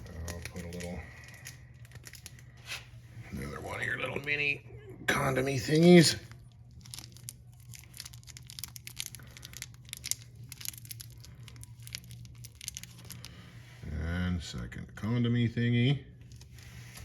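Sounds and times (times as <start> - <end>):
low steady hum: 0.0 - 17.0
small clicks and rustles of hands: 6.3 - 13.4.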